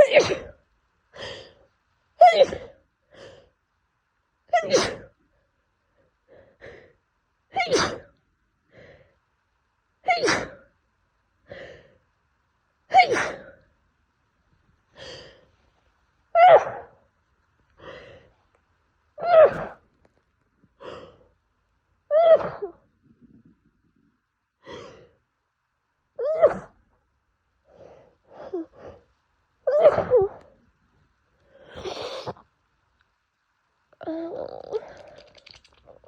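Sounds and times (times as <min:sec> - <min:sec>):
woman sneezing: 0:04.6 - 0:05.1, 0:07.6 - 0:08.1, 0:10.1 - 0:10.6, 0:12.9 - 0:13.5
gasping in-breath: 0:17.8 - 0:18.4, 0:24.6 - 0:25.2.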